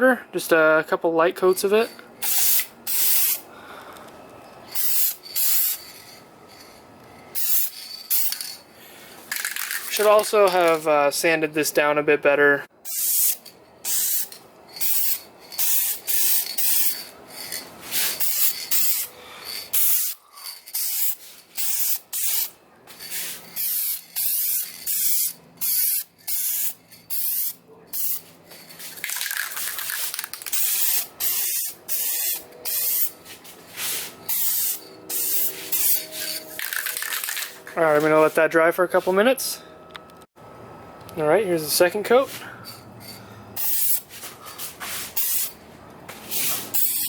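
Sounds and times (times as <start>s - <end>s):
aerosol spray can hissing: 2.2s - 3.4s, 4.8s - 5.8s, 7.4s - 8.4s, 12.9s - 17.1s, 17.9s - 19.1s, 19.7s - 22.5s, 23.1s - 28.2s, 28.9s - 33.1s, 33.8s - 37.4s, 43.6s - 44.1s, 45.1s - 45.5s.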